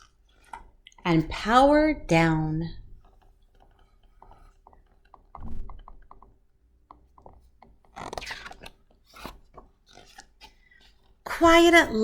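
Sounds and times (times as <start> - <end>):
paper page rustling: 8.0 - 10.2.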